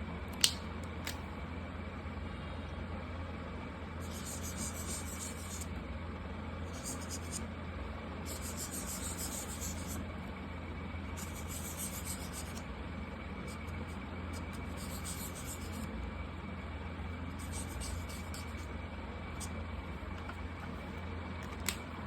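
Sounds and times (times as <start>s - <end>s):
steady low hum: 0.0s - 22.0s
marker rubbing on paper: 4.0s - 5.7s, 6.7s - 7.4s, 8.3s - 10.0s, 11.2s - 12.6s, 13.4s - 15.9s, 17.4s - 18.7s.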